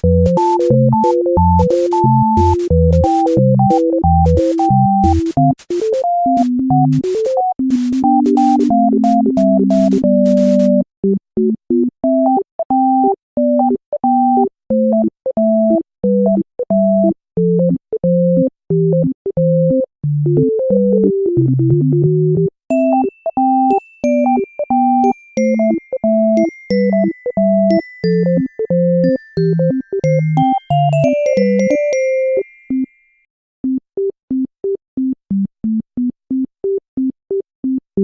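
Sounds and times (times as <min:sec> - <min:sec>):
drum beat: 0:00.0 - 0:10.7
bouncy keyboard melody: 0:00.0 - 0:10.8, 0:11.4 - 0:32.4.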